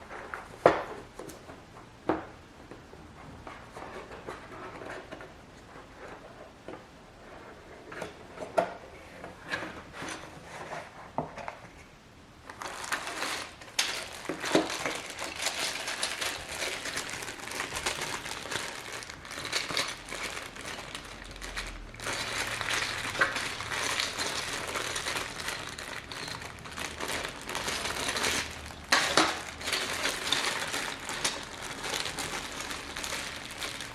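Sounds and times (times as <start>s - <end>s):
plastic wrap crinkling: 12.4s - 33.9s.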